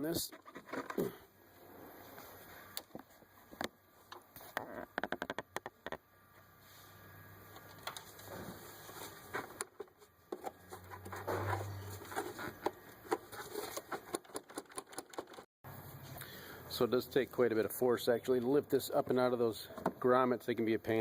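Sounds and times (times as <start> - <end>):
knocks and scraping: 0.0 - 6.1, 7.6 - 15.5.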